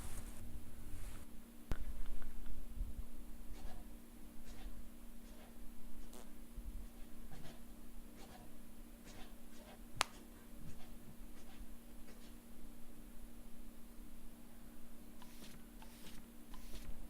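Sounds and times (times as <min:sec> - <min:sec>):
scratching and rustling handling: 0:00.0 - 0:01.3
steady low hum: 0:00.0 - 0:17.0.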